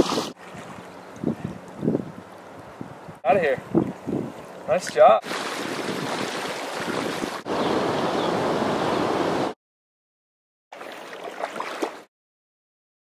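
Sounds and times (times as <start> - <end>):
rushing river water: 0.0 - 2.8, 3.7 - 9.6, 10.8 - 12.1.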